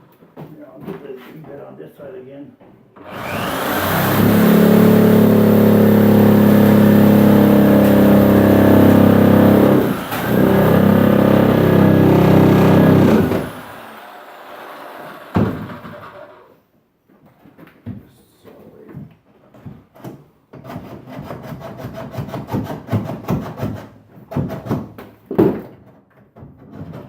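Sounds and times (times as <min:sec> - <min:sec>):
machine motor whining: 0:03.0 - 0:16.5.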